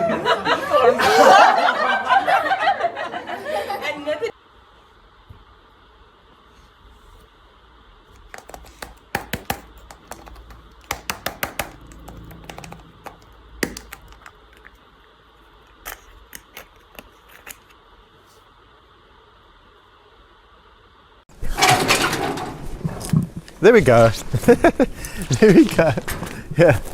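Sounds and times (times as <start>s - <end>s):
hands opening toy packaging: 8.2s - 14.8s, 15.7s - 17.7s.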